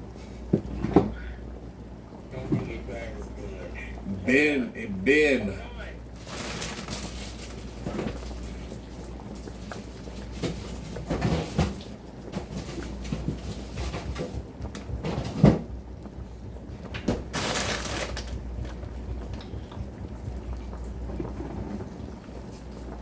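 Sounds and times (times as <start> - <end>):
pots and utensils clattering: 9.4 - 14.4.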